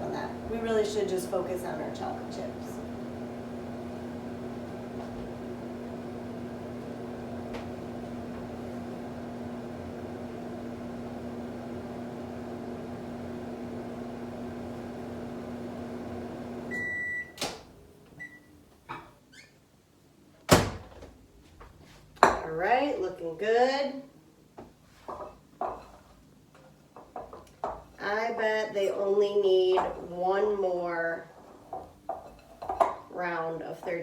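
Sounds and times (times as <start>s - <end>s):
microwave oven humming: 0.0s - 18.7s
microwave beeps: 16.6s - 17.6s, 18.2s - 18.6s.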